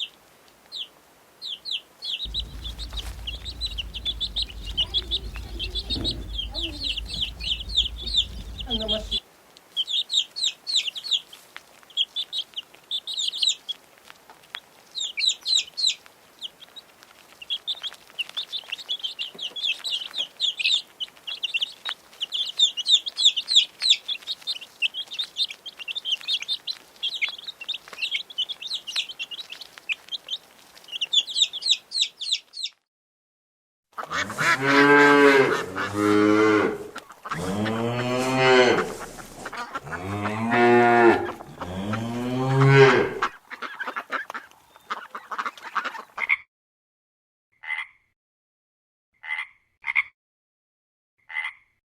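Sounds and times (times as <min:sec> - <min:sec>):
chicks peeping: 0:02.3 - 0:09.2, 0:37.3 - 0:46.1
farm animal calling: 0:02.3 - 0:09.2, 0:34.0 - 0:46.1.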